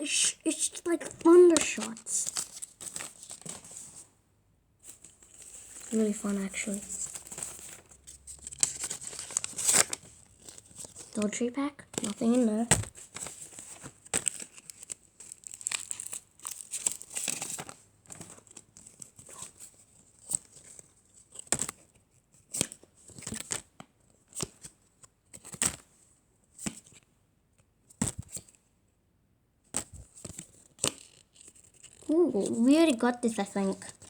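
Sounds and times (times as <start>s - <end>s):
wrapper crinkling and tearing: 0.5s - 3.8s, 4.9s - 11.4s, 12.0s - 18.4s
cards clicking: 0.6s - 3.6s.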